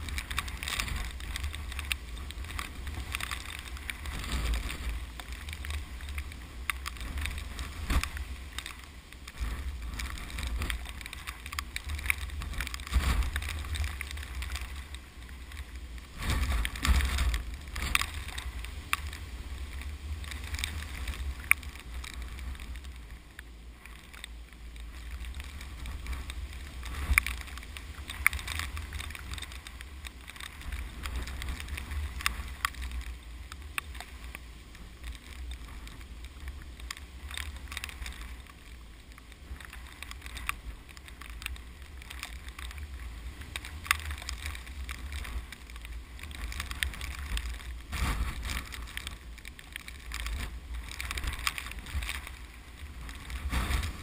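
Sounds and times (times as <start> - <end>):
rustling hiss: 0.0 - 54.0
small ticks: 0.0 - 54.0
wind buffeting microphone: 39.5 - 54.0.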